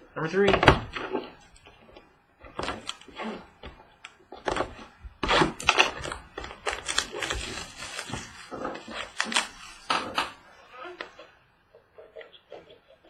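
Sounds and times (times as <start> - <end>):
cardboard and cards crinkling: 0.4 - 10.4.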